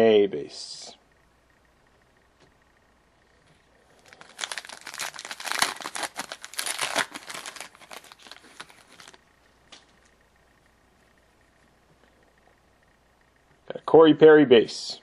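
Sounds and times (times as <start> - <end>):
wrapper crinkling and tearing: 4.0 - 9.2.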